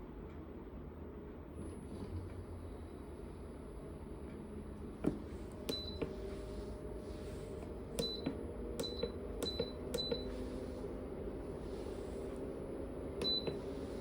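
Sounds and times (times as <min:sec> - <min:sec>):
fridge low hum: 0:00.0 - 0:14.0
button press beeps: 0:08.0 - 0:10.4, 0:13.2 - 0:13.6.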